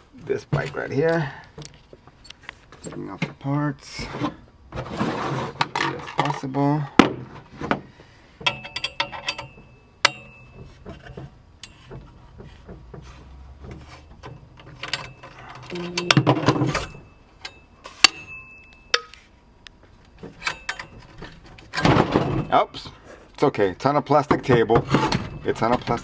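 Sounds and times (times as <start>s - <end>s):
tools clicking and clinking: 1.0s - 3.0s, 8.4s - 10.3s.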